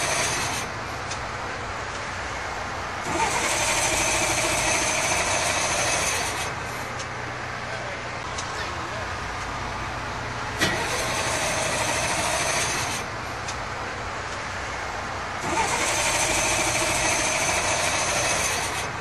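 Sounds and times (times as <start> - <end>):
mechanical whirring: 10.6 - 13.1, 15.4 - 19.0.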